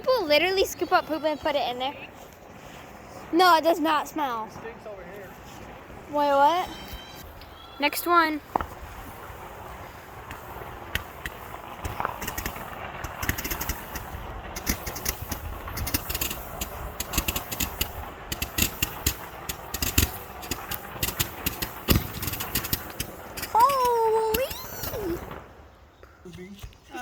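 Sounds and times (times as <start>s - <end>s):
ground firework crackling: 0.0s - 27.0s.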